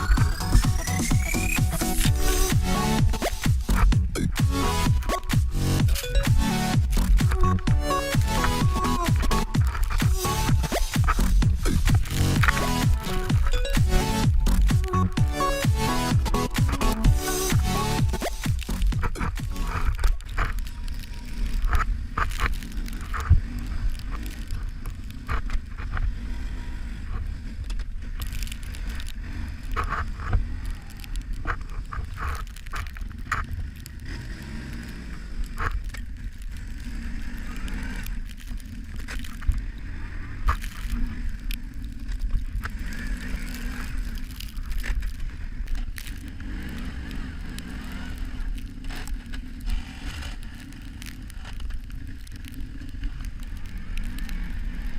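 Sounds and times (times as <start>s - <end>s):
atv engine running: 0.0s - 54.9s
snow scraping against plow blade: 1.4s - 14.6s.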